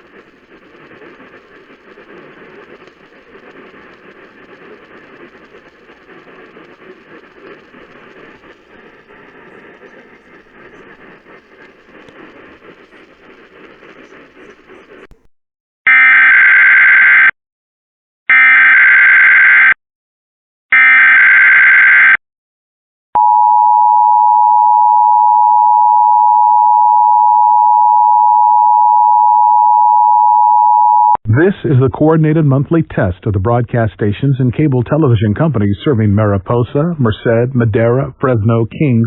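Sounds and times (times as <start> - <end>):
faint hiss: 0.0 - 15.2.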